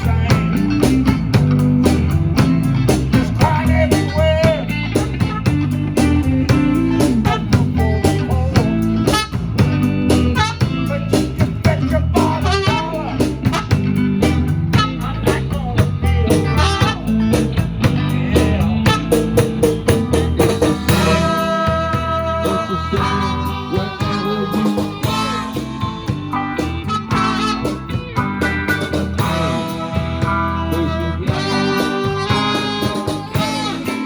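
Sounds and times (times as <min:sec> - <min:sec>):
drum kit beat: 0:00.0 - 0:34.0
live band playing: 0:00.0 - 0:34.0.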